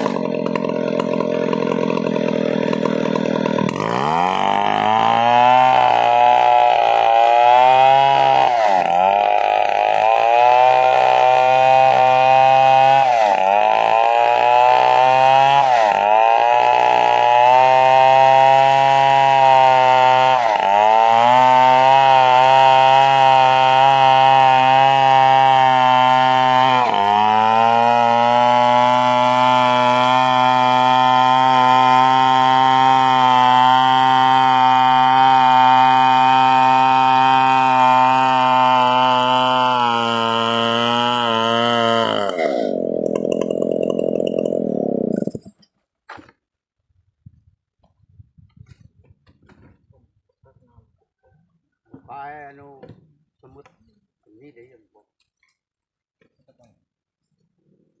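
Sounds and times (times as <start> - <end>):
chainsaw sawing timber: 0.0 - 46.4.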